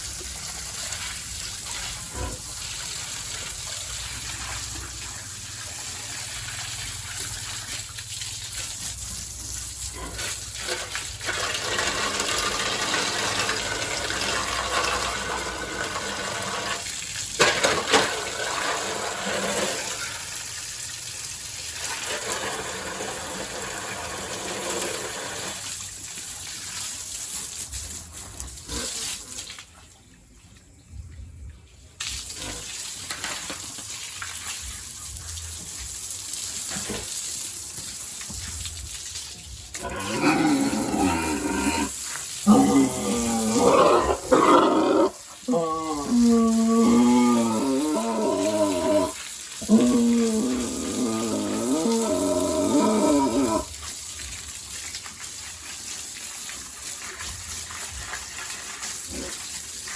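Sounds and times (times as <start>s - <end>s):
water gushing and splashing: 0.0s - 30.0s, 32.0s - 59.9s.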